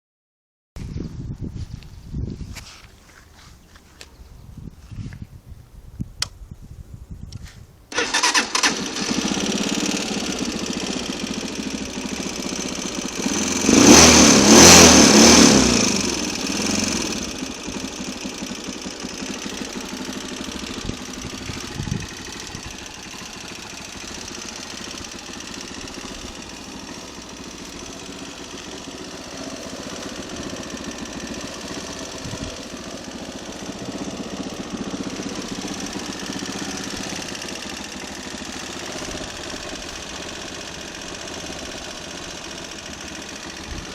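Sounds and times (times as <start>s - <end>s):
small engine starting and revving: 7.9s - 43.9s.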